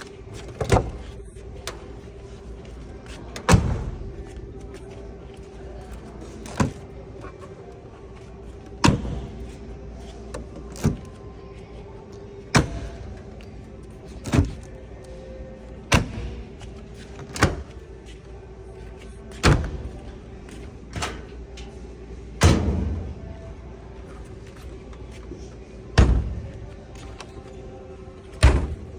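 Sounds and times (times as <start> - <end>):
steady low hum: 0.0 - 28.9
washing machine doors banging shut: 22.4 - 23.1, 26.0 - 26.5, 28.4 - 28.9.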